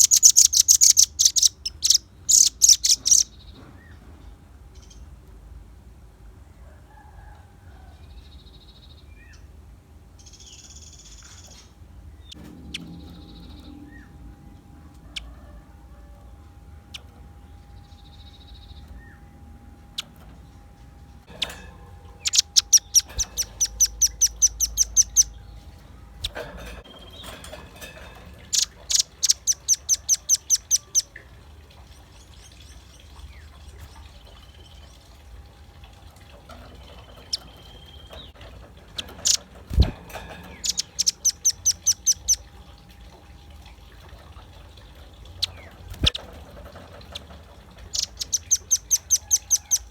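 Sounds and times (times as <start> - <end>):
bird rapid high chip notes: 21.3 - 31.1, 39.2 - 42.5.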